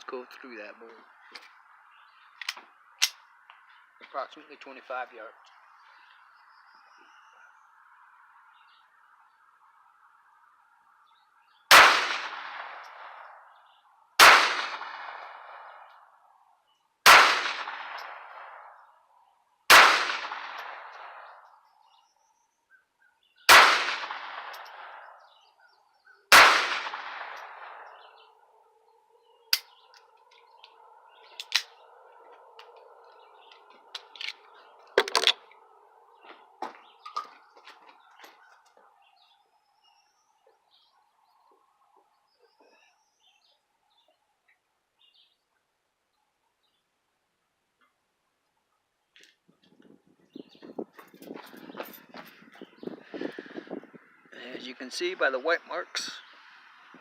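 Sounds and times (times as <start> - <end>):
pistol shots with echo: 11.7 - 13.4, 14.2 - 15.8, 17.0 - 18.8, 19.7 - 21.4, 23.5 - 25.2, 26.3 - 28.3.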